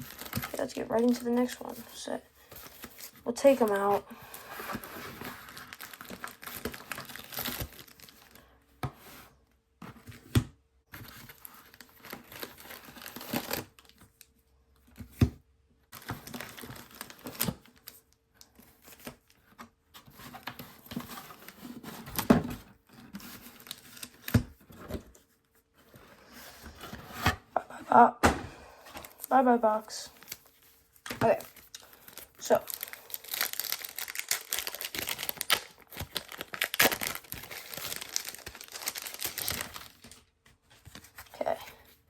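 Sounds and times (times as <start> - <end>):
wrappers crinkling and tearing: 0.0 - 8.4, 11.1 - 14.2, 15.9 - 19.4, 23.0 - 24.4, 29.0 - 41.7.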